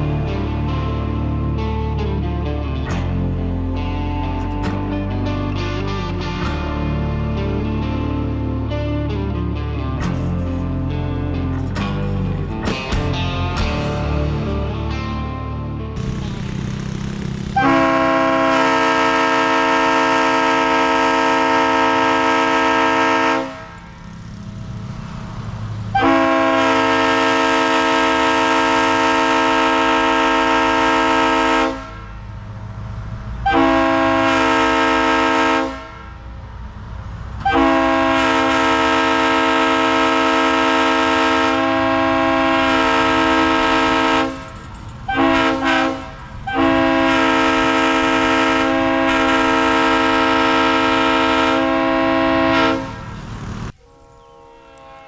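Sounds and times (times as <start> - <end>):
locomotive air horn blasts: 17.5 - 23.9, 25.9 - 32.2, 33.4 - 36.2, 37.4 - 55.0.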